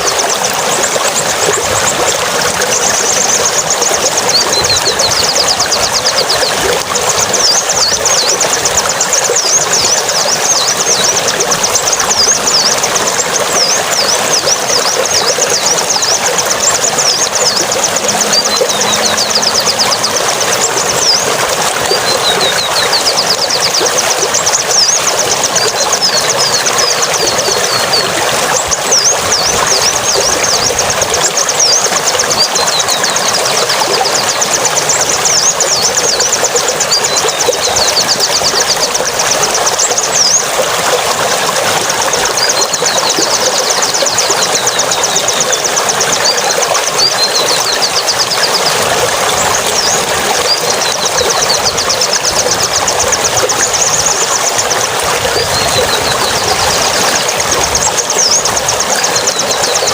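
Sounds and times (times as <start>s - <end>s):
songbird chirping: 13.5s - 24.0s.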